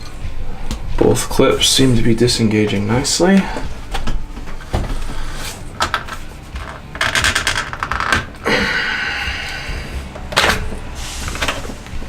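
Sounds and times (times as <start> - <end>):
plastic creaking: 5.7 - 8.4.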